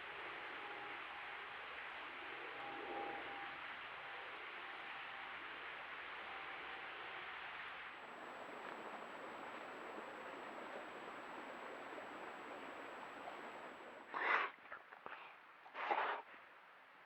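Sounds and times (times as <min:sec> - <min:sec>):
faint high-pitched tone: 0:00.0 - 0:14.1
creek water flowing: 0:07.4 - 0:14.3.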